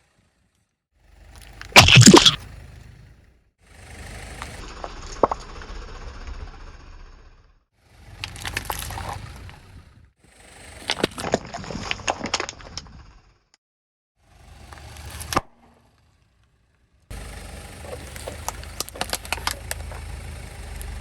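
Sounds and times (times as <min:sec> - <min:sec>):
car tyre rumble: 0:01.1 - 0:07.1, 0:07.9 - 0:13.3, 0:14.6 - 0:21.0
objects cracking and crunching: 0:01.4 - 0:02.4, 0:08.2 - 0:09.4, 0:10.9 - 0:12.8, 0:17.9 - 0:20.1.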